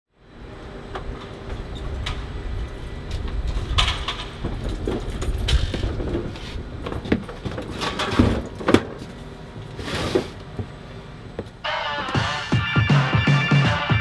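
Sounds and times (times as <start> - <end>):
music: 11.6 - 14.0.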